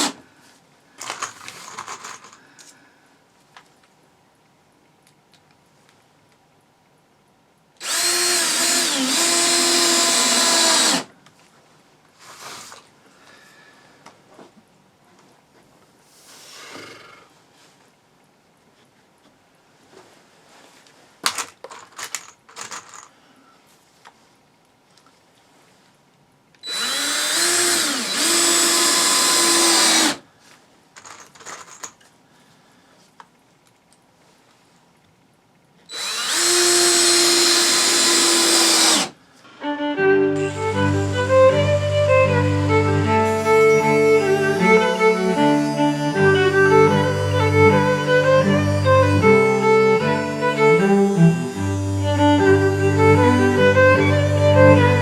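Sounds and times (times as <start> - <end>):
power drill running: 7.8 - 11.1, 12.4 - 12.8, 26.6 - 30.2, 35.9 - 39.2, 40.4 - 55.0.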